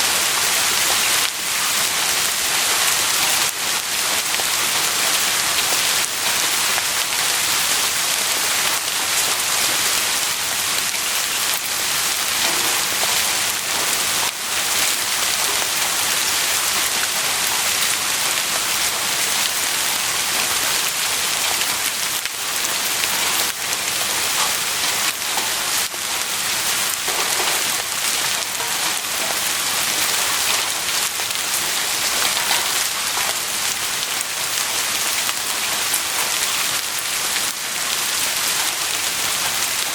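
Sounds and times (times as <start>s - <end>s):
heavy rain falling: 0.0s - 39.9s
raindrops pattering on a surface: 0.0s - 39.9s.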